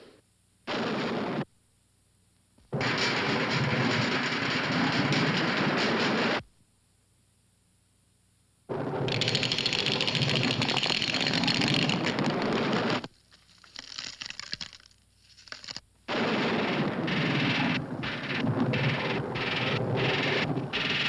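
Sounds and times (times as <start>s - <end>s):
cartoon earthquake rattling rumble: 2.8s - 6.4s, 8.7s - 14.8s, 15.5s - 21.0s.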